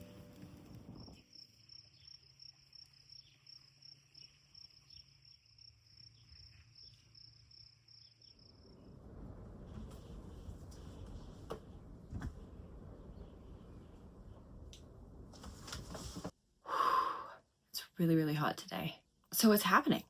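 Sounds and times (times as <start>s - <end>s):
cricket chirping: 0.0s - 9.4s
low rush of noise: 8.6s - 16.3s.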